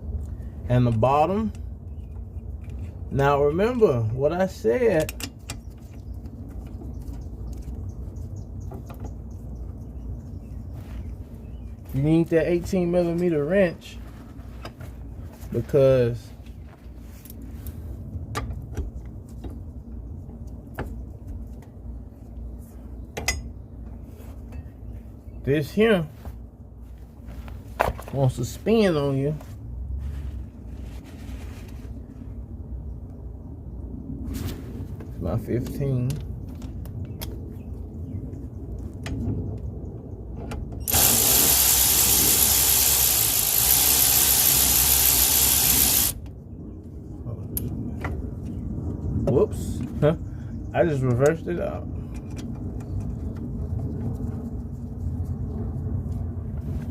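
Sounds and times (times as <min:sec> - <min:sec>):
cordless ratchet running: 0:40.9 - 0:46.2.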